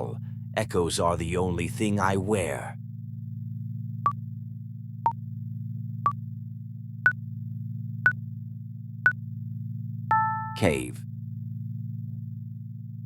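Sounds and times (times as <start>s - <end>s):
low electronic hum: 0.0s - 13.0s
countdown timer beeps: 10.1s - 10.8s.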